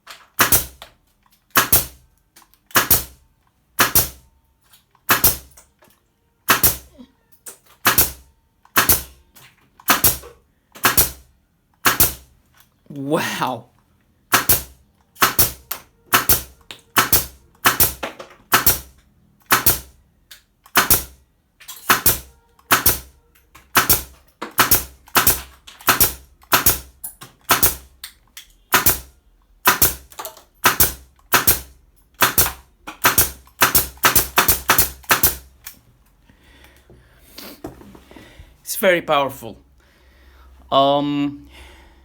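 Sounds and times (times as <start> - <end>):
nail gun firing: 0.1 - 0.9, 1.5 - 2.0, 2.7 - 3.2, 3.8 - 4.2, 5.1 - 5.6, 6.5 - 6.9, 7.8 - 9.2, 9.8 - 12.3, 14.3 - 20.0, 20.6 - 27.9, 28.7 - 35.5.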